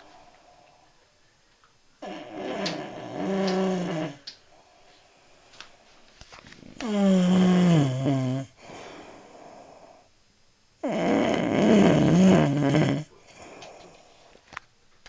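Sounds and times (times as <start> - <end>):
man snoring: 2.0 - 4.2, 6.8 - 10.0, 10.8 - 13.8.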